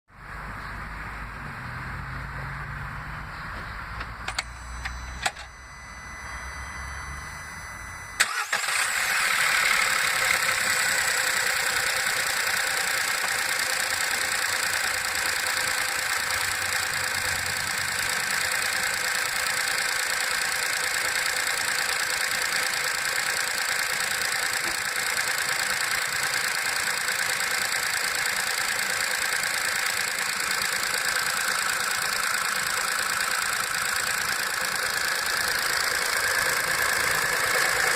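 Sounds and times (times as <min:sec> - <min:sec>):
car engine cranking and idling: 0:02.1 - 0:37.9
clicks: 0:03.5 - 0:05.5.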